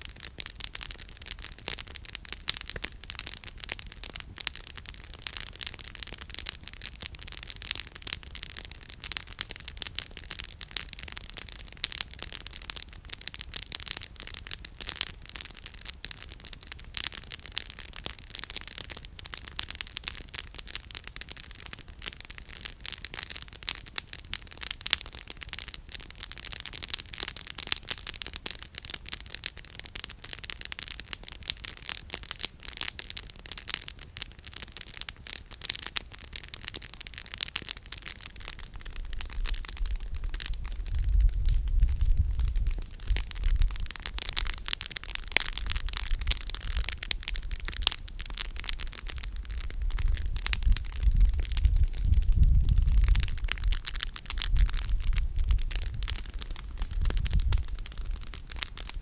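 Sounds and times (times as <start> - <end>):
campfire crackling and popping: 0.0 - 59.0
soft fire hiss: 32.3 - 59.0.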